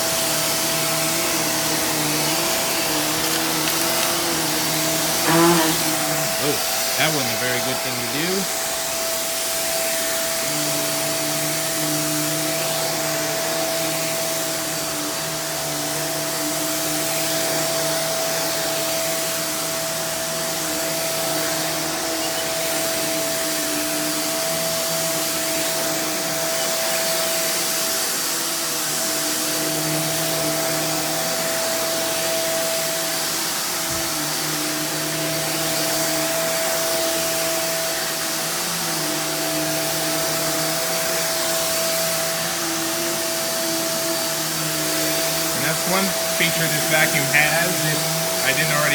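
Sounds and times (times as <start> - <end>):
upright vacuum running: 0.0 - 48.9.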